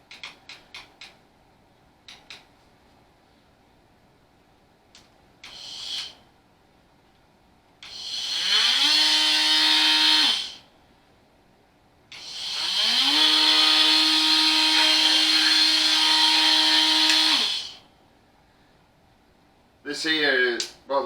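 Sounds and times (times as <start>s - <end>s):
oscillating multi-tool motor buzzing: 5.4s - 6.2s, 7.8s - 10.6s, 12.1s - 17.8s.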